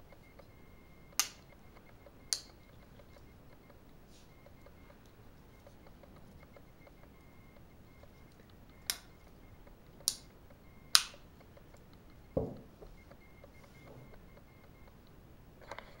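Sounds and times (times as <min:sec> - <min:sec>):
faint high beeping tone: 0:00.0 - 0:16.0
sharp clicks: 0:00.1 - 0:12.3
dull thump: 0:12.4 - 0:12.7.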